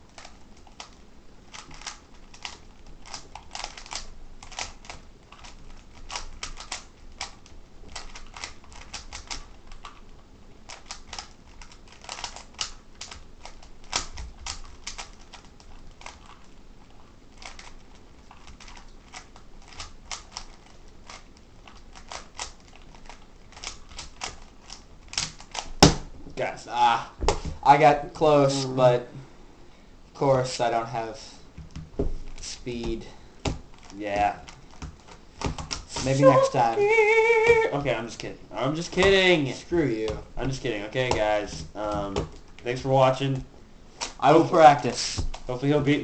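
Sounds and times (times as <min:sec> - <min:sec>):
plastic puzzle cube clicking: 0:00.1 - 0:10.1, 0:10.7 - 0:16.5, 0:17.4 - 0:25.8.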